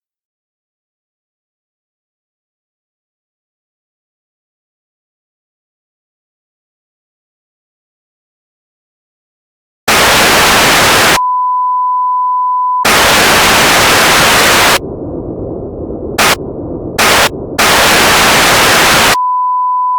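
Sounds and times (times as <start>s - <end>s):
tv static hiss: 9.9s - 11.2s, 12.9s - 14.8s, 16.2s - 16.4s, 17.0s - 19.2s
steady single-pitch beep tone: 10.9s - 13.5s, 17.0s - 19.9s.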